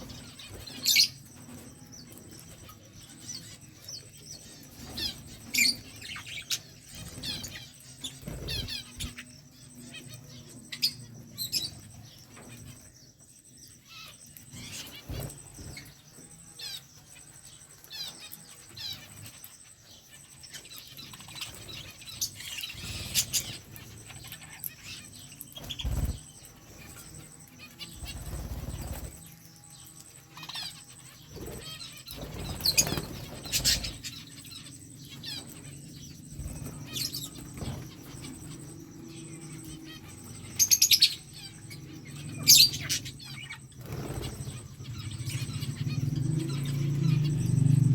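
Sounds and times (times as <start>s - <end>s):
budgerigars chirping: 4.7s - 9.2s, 30.4s - 47.9s.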